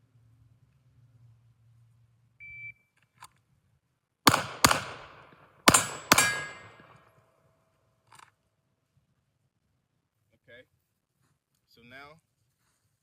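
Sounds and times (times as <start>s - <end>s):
pistol shots: 4.3s - 7.0s
steel target ringing: 5.7s - 7.0s.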